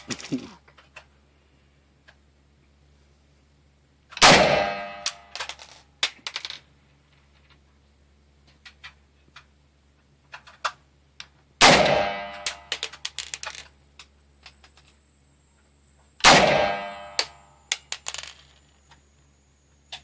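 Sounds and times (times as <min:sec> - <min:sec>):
rifle shots: 0:04.2 - 0:05.5, 0:11.6 - 0:12.9, 0:16.2 - 0:17.4.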